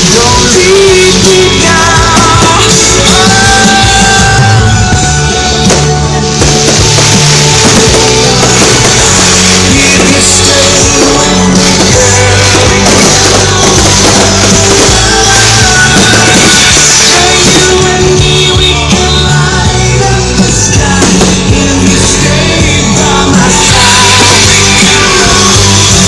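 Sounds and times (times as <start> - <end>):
loud rock music with singing: 0.0 - 26.0.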